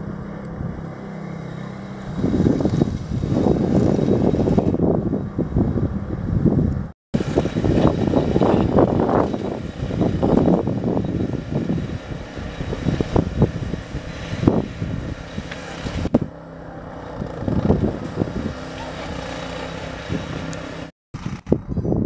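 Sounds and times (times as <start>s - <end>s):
machine engine running: 0.0s - 21.6s
distant voices: 7.2s - 20.9s.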